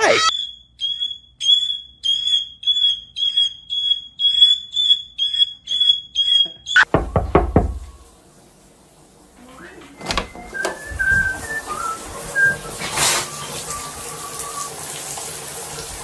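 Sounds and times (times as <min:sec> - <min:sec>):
alarm beeping: 0:00.0 - 0:08.0
sharp knocks: 0:06.8 - 0:07.9.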